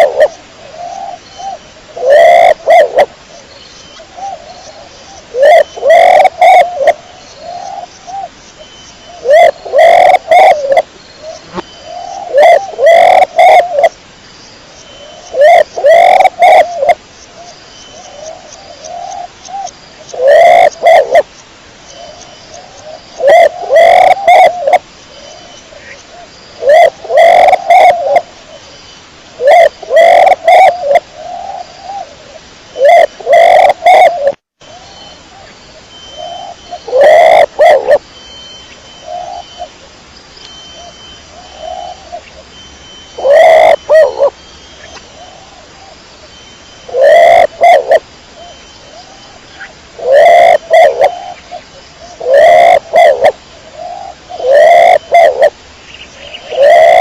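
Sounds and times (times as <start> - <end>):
pigeon cooing: 2.0 - 3.1, 5.4 - 7.0, 9.2 - 10.8, 12.1 - 13.9, 15.3 - 17.0, 23.2 - 24.8, 26.6 - 28.2, 29.4 - 32.0, 32.8 - 34.4, 36.2 - 38.0, 43.2 - 44.3, 46.9 - 48.0, 50.0 - 51.4, 52.2 - 55.5, 56.4 - 57.0.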